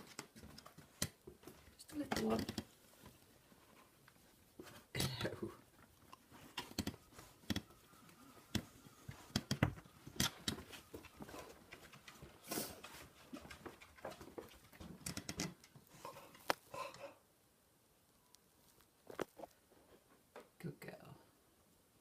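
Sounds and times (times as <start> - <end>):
pet clicks and scuffles: 0.0 - 16.8.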